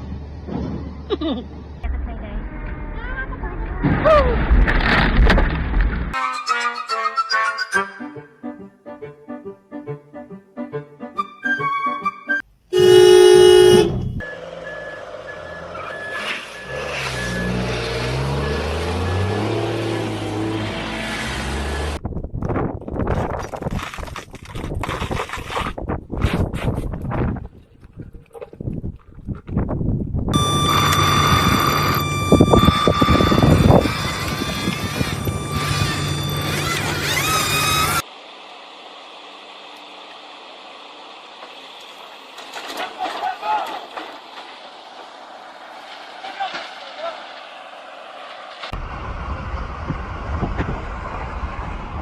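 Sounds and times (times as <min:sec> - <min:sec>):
loud horn blast: 0:12.7 - 0:14.3, 0:30.4 - 0:38.0
reversing alarm beeping: 0:12.8 - 0:17.7, 0:30.4 - 0:38.0
rough noise: 0:30.4 - 0:38.1
heavy vehicle engine running: 0:30.4 - 0:43.0.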